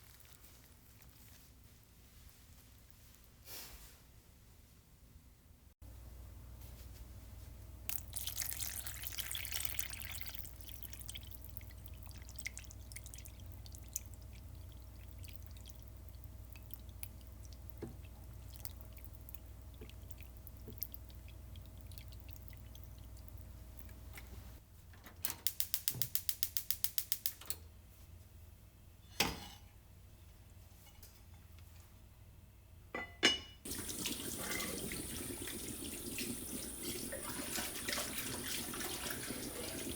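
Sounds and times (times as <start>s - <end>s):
faint steady hum: 0.0s - 25.2s, 27.4s - 39.9s
water pouring or splashing: 7.9s - 24.1s, 33.7s - 39.9s.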